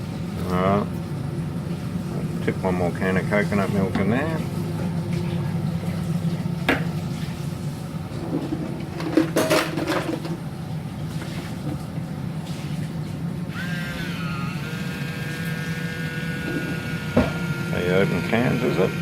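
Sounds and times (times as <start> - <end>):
steady low hum: 0.0 - 19.0
electric can opener motor whine: 13.4 - 19.0.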